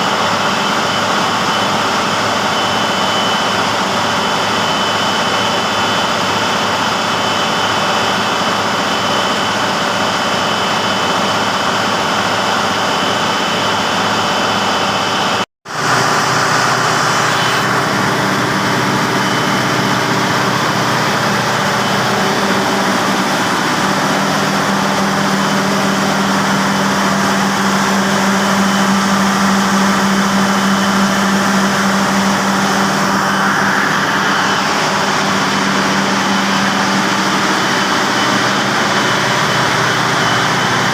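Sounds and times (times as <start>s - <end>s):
diesel generator running: 0.0s - 40.9s
steady low hum: 14.5s - 40.9s.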